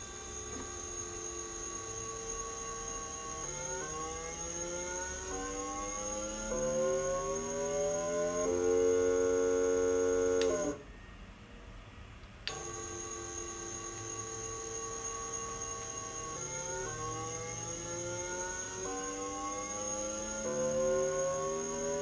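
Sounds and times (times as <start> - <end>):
electric motor whining: 0.0 - 10.8, 12.5 - 22.0
motor switch click: 10.3 - 10.8, 12.2 - 12.8.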